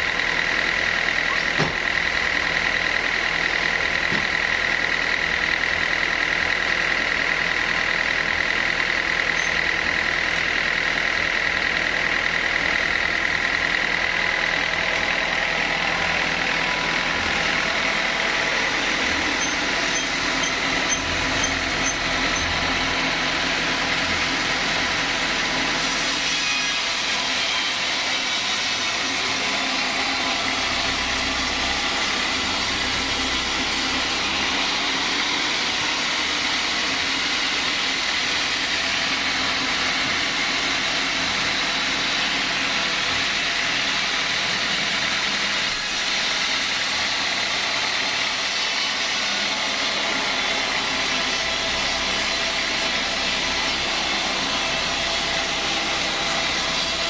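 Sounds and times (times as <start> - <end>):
sawmill saw droning with high whine: 0.0 - 57.0.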